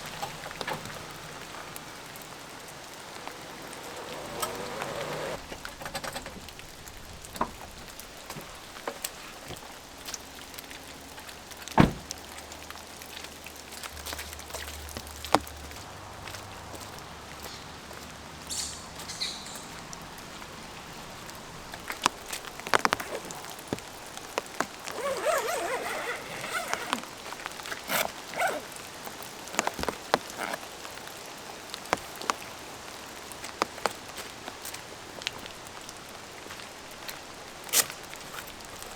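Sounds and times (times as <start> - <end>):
steady rain falling: 0.0 - 38.9
drops ticking and knocking: 19.9 - 28.3.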